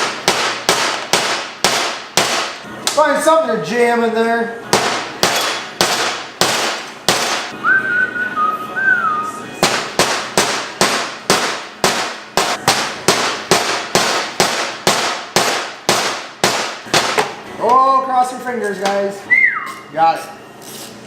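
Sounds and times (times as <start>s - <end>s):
two-note whistle: 7.6s - 9.4s, 19.3s - 19.9s.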